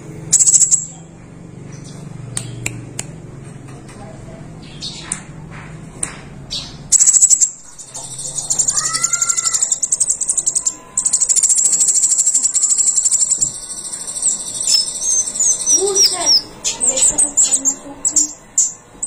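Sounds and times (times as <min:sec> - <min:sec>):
songbird rapid ticking trill: 0:00.3 - 0:01.0, 0:06.9 - 0:18.8.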